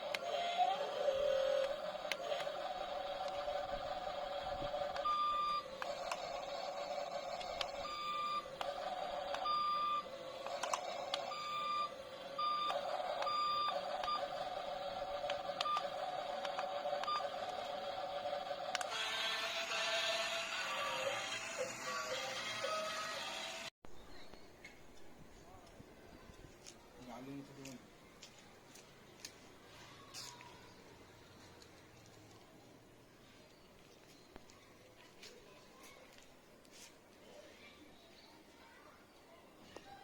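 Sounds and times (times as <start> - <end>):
scattered clicks: 0.0 - 9.6, 10.4 - 11.6, 12.6 - 19.1
toy electric motor whine: 0.0 - 23.7.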